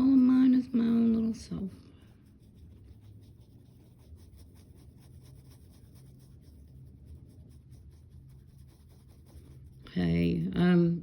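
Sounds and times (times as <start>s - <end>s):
paintbrush strokes on canvas: 0.0s - 10.6s
low steady hum: 0.0s - 11.0s.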